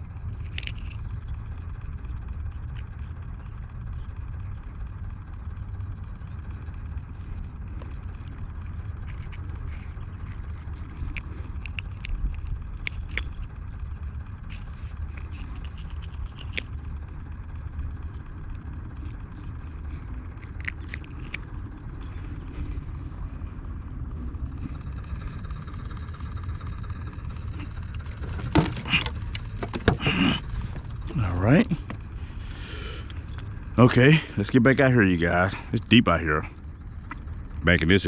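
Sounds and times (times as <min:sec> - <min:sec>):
small clicks: 0:00.3 - 0:01.7, 0:07.7 - 0:16.8.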